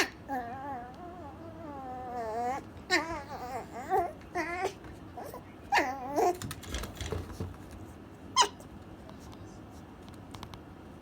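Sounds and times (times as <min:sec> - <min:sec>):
puppy whining: 0:00.0 - 0:07.1, 0:08.4 - 0:08.7
puppy yelp: 0:01.6 - 0:06.4, 0:08.4 - 0:08.6.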